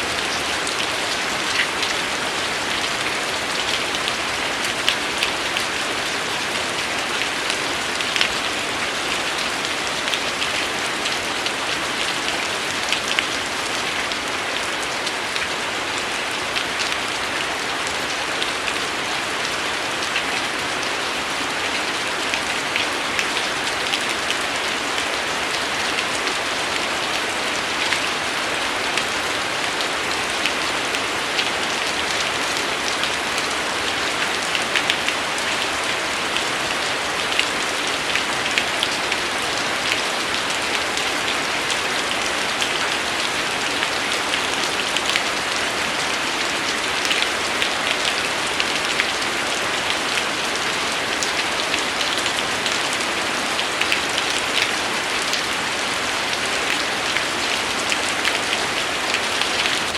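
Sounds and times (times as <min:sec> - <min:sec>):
rain hiss: 0:00.0 - 0:59.9
raindrops tapping: 0:32.0 - 0:33.4, 0:47.0 - 0:48.2, 0:52.0 - 0:55.5, 0:56.2 - 0:58.5.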